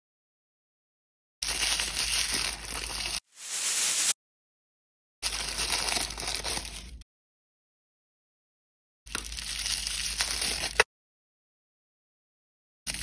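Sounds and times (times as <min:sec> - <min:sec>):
plastic wrappers crinkling: 0:01.4 - 0:04.2.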